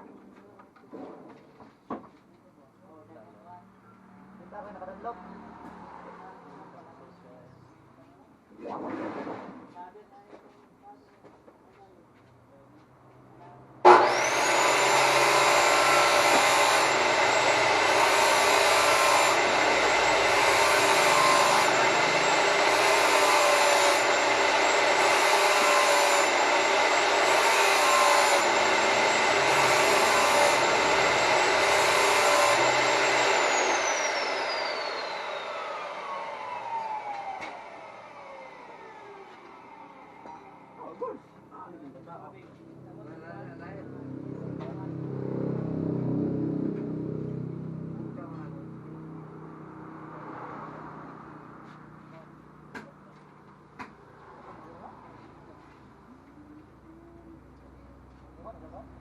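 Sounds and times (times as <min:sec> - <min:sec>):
power tool motor whining: 0:13.8 - 0:40.7.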